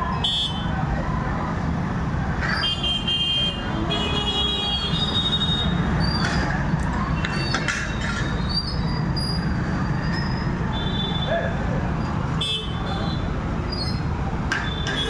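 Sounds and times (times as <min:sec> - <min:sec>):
road traffic rumbling: 0:00.0 - 0:15.0.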